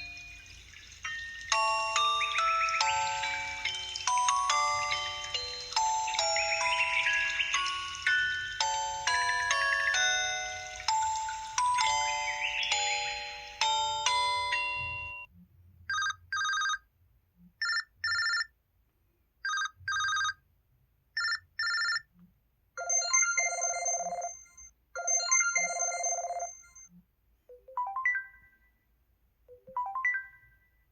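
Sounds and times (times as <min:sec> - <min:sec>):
rising chime: 0:00.0 - 0:15.3
mobile phone ringtones: 0:01.0 - 0:15.3, 0:15.9 - 0:16.8, 0:17.6 - 0:18.5, 0:19.4 - 0:20.4, 0:21.2 - 0:22.1, 0:22.8 - 0:26.9, 0:27.5 - 0:28.8, 0:29.5 - 0:30.9.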